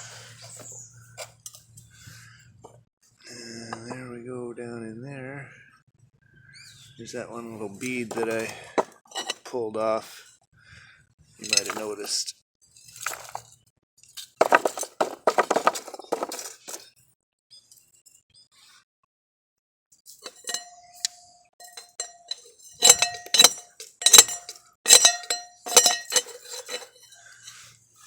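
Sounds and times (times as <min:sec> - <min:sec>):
metal tool clinking in crucible: 0:08.1 - 0:09.5, 0:11.4 - 0:12.2, 0:13.0 - 0:13.5, 0:14.4 - 0:16.8, 0:20.2 - 0:27.7.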